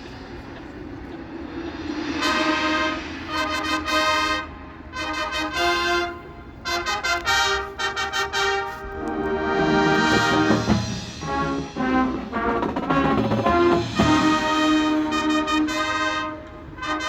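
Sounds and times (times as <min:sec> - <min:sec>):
marching band brass chords: 0:01.8 - 0:17.0.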